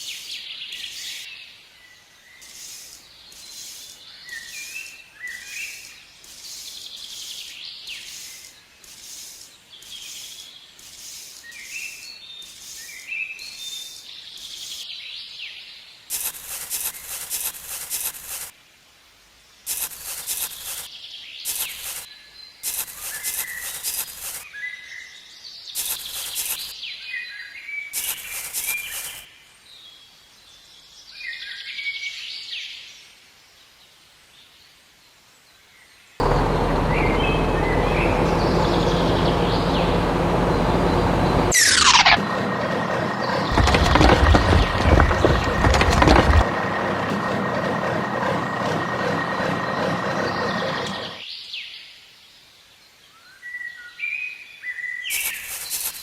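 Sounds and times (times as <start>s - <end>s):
birds chirping: 36.2s - 51.2s.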